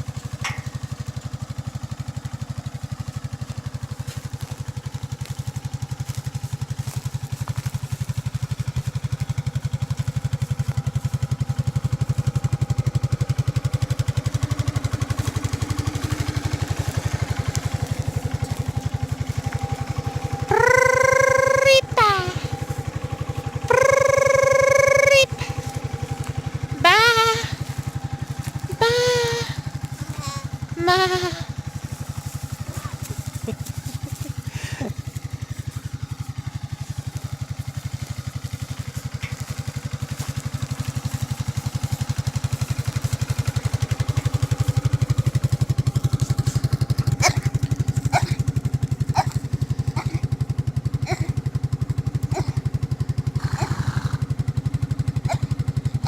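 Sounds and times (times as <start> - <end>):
atv engine running: 0.0 - 56.0
sharp knocks and rattles: 0.3 - 1.1
lamb bleating: 20.5 - 22.5, 26.8 - 27.6, 28.7 - 31.5.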